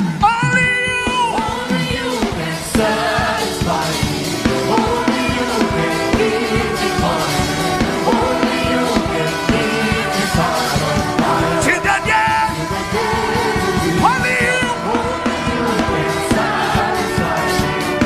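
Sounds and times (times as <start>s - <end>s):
band playing with drums: 0.0s - 18.0s
voices singing: 0.0s - 18.0s.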